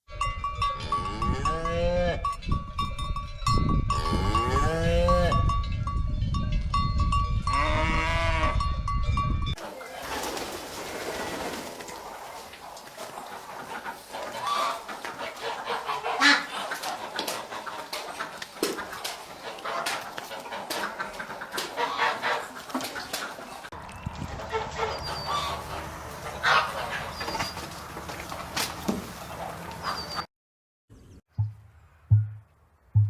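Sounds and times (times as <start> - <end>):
chickens clucking: 9.6 - 30.3
chicken squawk: 11.3 - 23.6, 24.4 - 27.7.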